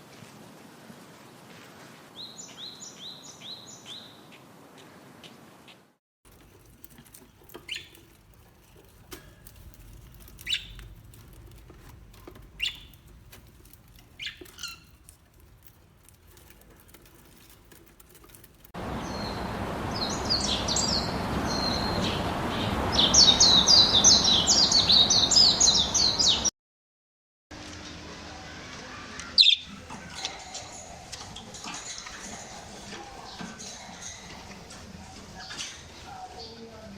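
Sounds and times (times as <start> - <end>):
budgerigars chirping: 10.4 - 10.8, 12.6 - 13.0, 14.2 - 14.8.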